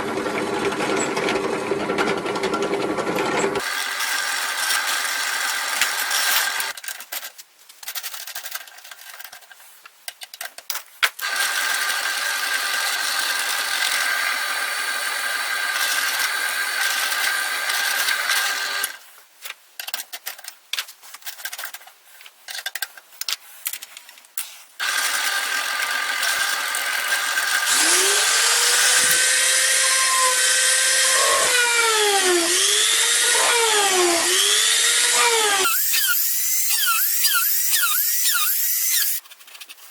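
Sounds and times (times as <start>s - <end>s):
power tool motor whine: 24.8s - 39.2s.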